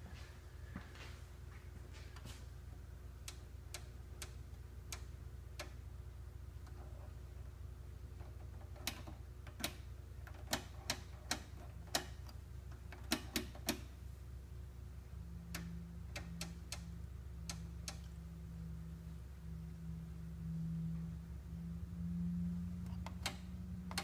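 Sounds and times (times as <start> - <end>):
low mains hum: 0.0 - 24.0
wavering low hum: 0.0 - 24.0
oscilloscope switches clicking: 3.2 - 5.8, 8.3 - 13.9, 15.4 - 18.2, 22.8 - 24.0.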